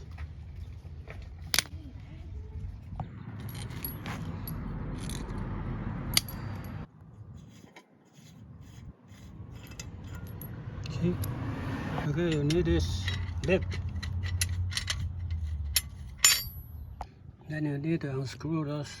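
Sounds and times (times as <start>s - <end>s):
metal scraping: 3.1s - 17.0s
metal tools clinking: 3.4s - 5.4s, 6.1s - 6.8s, 9.5s - 11.4s, 12.1s - 17.0s.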